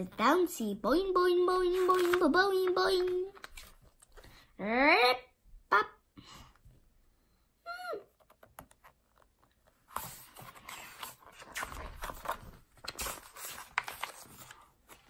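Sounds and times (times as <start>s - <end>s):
book pages rustling: 1.5s - 4.3s, 8.1s - 15.0s.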